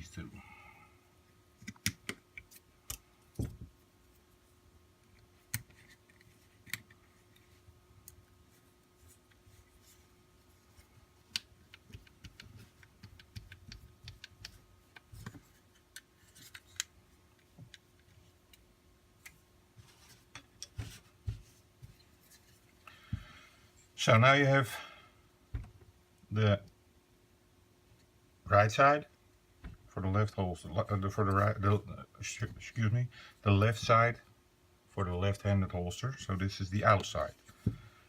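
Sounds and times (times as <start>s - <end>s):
faint steady hum: 0.0s - 38.0s
clicks and taps of plastic parts: 11.2s - 18.6s.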